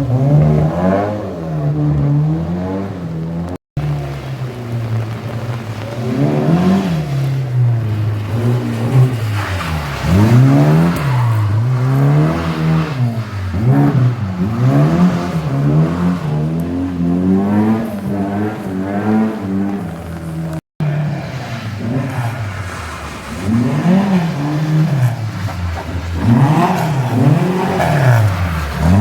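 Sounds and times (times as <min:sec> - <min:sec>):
car engine revving: 0:00.0 - 0:29.0.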